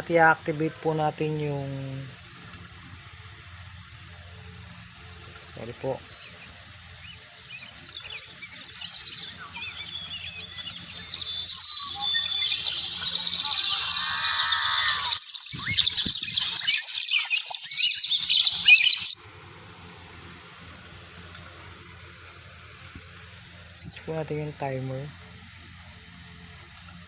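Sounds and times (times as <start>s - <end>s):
birds chirping and trilling: 0.0s - 19.2s.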